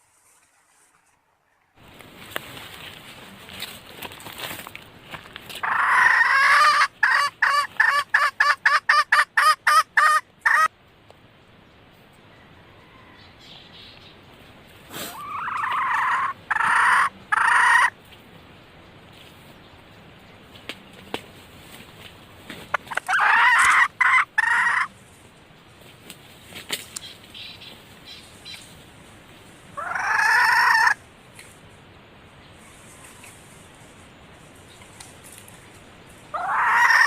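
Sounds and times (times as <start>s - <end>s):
hen calling: 5.5s - 10.7s, 14.9s - 18.0s, 22.7s - 25.0s, 29.7s - 31.1s, 36.3s - 37.0s.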